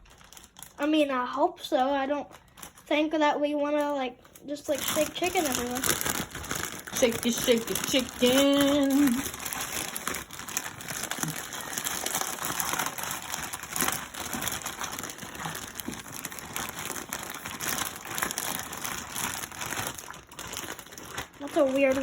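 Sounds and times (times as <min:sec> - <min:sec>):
plastic bags crinkling: 0:00.0 - 0:22.0.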